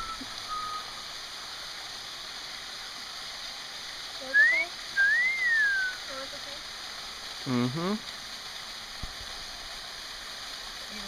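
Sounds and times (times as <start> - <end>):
short rising whistle: 0.0 - 1.0, 4.4 - 6.0
running water hiss: 0.0 - 11.0.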